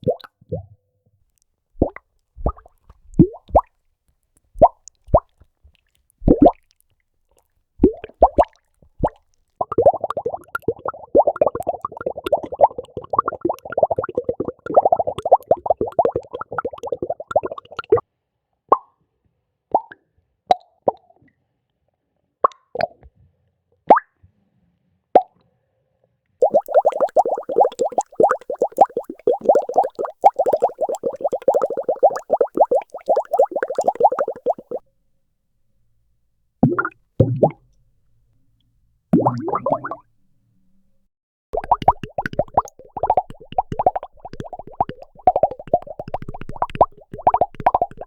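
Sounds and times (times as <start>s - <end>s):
bubbles popping: 1.8s - 3.7s, 6.2s - 6.6s, 7.8s - 17.6s, 26.4s - 34.8s, 36.6s - 37.6s, 39.2s - 40.1s, 41.6s - 48.0s.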